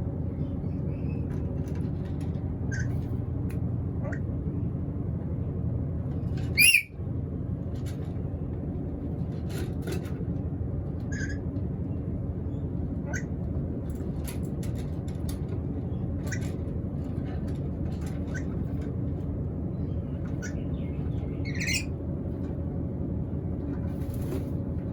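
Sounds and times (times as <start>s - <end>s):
low background rumble: 0.0s - 24.9s
parrot squawking: 6.6s - 6.9s, 11.1s - 11.4s, 21.4s - 21.9s.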